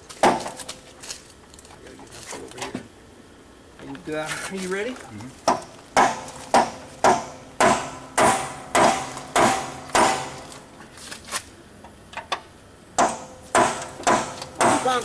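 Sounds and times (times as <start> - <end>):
hammer blows on steel: 5.5 - 10.5, 13.0 - 15.0.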